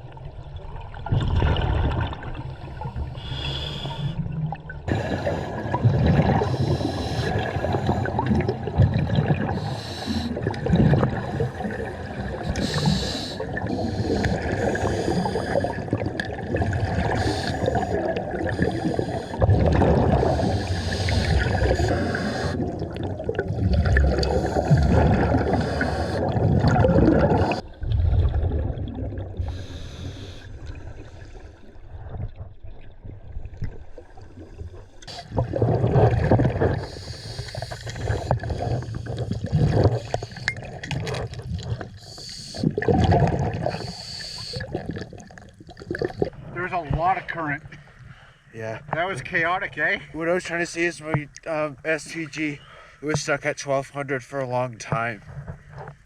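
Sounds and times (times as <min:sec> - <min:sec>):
gurgling exhaust bubbles: 0:00.0 - 0:03.5, 0:04.1 - 0:47.7
diver breathing through regulator: 0:02.4 - 0:04.3, 0:04.9 - 0:08.7, 0:09.3 - 0:16.3, 0:16.9 - 0:28.2, 0:29.3 - 0:31.6, 0:35.0 - 0:41.1, 0:41.7 - 0:45.0.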